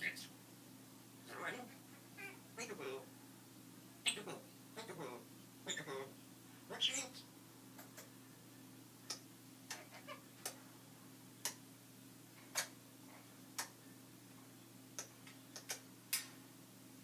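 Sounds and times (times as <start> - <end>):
steady low hum: 0.0 - 17.0
parrot clicking: 13.6 - 13.8, 15.0 - 16.3.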